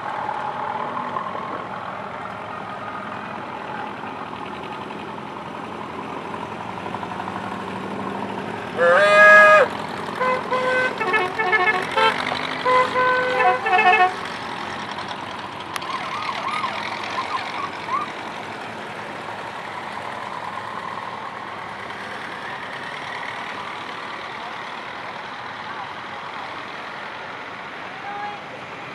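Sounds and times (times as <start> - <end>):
vehicle engines idling: 0.0 - 28.9
multi-tone vehicle horn: 8.8 - 14.3.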